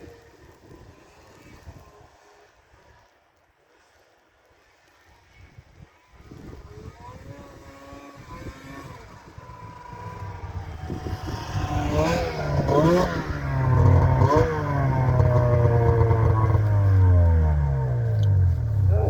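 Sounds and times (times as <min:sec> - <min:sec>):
engine revving: 0:06.7 - 0:19.0.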